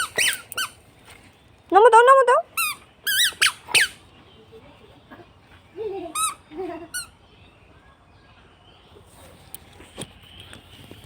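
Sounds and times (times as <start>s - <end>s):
high-pitched squeaks: 0.0s - 0.8s.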